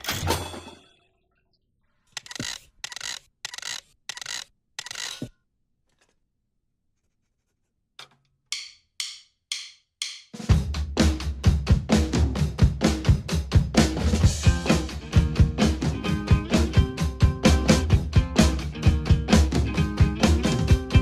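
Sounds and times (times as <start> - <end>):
sharp percussive hits: 8.5 - 10.5
drum kit playing: 8.5 - 21.0.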